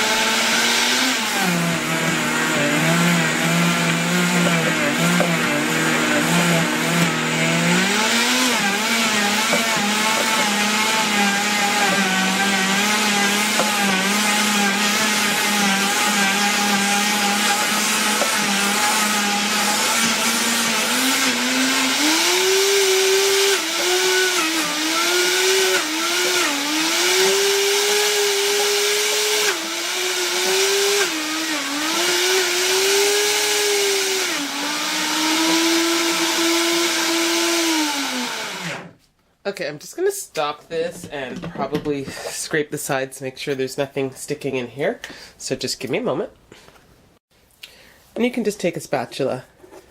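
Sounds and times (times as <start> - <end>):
blender motor grinding seeds: 0.0 - 39.0.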